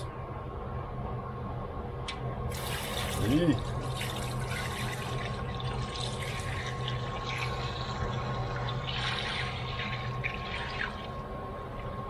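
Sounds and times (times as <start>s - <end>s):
steady low hum: 0.0s - 12.0s
liquid sloshing and splashing: 2.5s - 11.2s.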